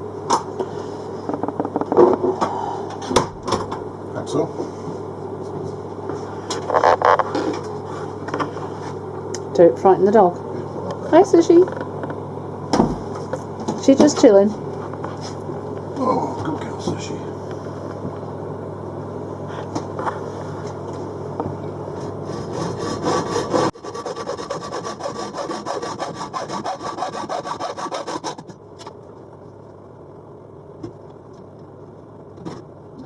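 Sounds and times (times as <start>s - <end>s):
hacksaw sawing: 22.3s - 28.4s.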